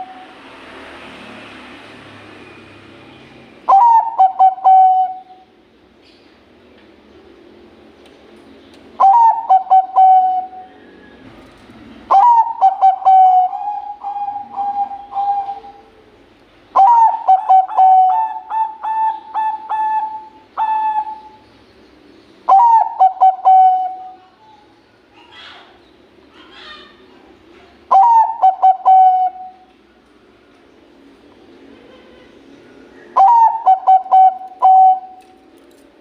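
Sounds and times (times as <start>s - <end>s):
dove cooing: 0.0s - 0.3s, 3.7s - 5.5s, 9.0s - 11.4s, 12.0s - 21.4s, 22.5s - 24.4s, 27.8s - 29.7s, 31.8s - 35.3s.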